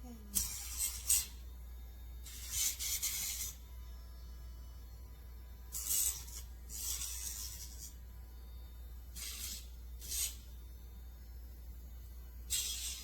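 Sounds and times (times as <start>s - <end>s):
faint steady hum: 0.0s - 13.0s
nail grinder grinding: 0.3s - 1.4s, 2.2s - 3.6s, 5.7s - 8.0s, 9.1s - 10.5s, 12.5s - 13.0s.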